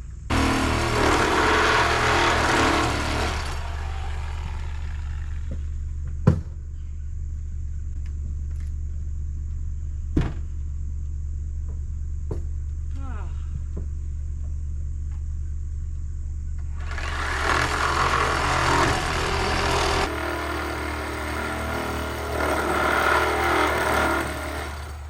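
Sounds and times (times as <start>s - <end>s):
harsh mechanical noise: 0.3s - 6.1s, 16.5s - 25.0s
engine idling: 16.7s - 25.0s.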